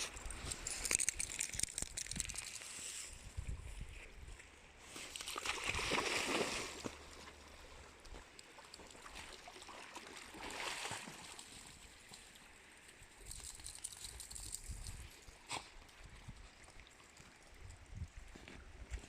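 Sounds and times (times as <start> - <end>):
water splashing and gurgling: 5.0 - 7.7, 8.4 - 12.1.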